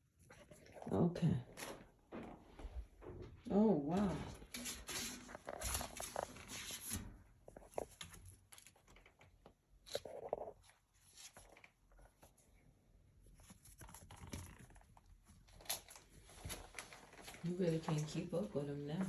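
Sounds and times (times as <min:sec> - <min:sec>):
kittens moving about: 0:04.1 - 0:12.6.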